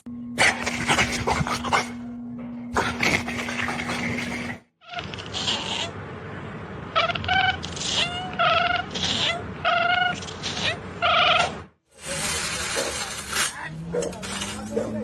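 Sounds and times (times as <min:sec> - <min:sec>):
cat meowing: 0:04.8 - 0:06.0, 0:06.9 - 0:11.6.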